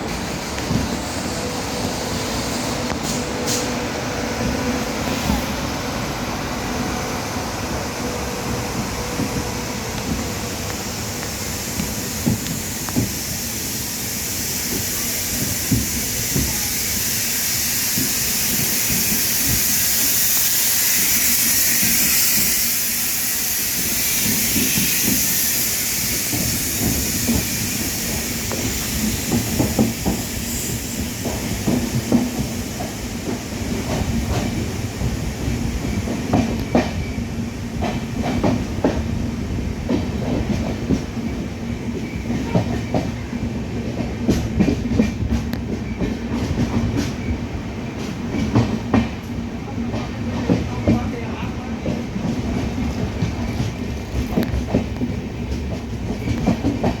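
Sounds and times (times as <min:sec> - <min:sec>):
train hissing: 0:00.0 - 0:57.0.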